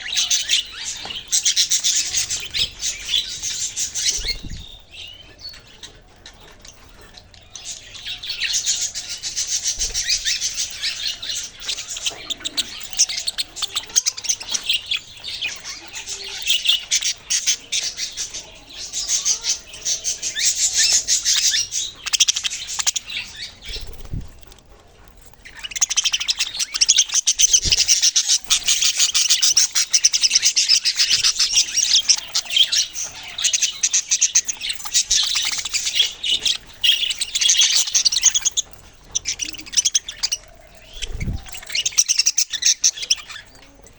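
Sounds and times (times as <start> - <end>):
small birds chirping: 0.0 - 43.9.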